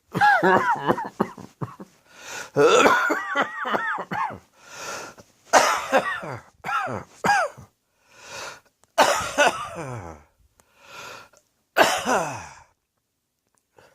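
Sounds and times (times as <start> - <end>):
person coughing in harsh bouts: 0.1 - 1.9, 2.5 - 4.4, 5.5 - 7.7, 9.0 - 10.2, 11.8 - 12.6.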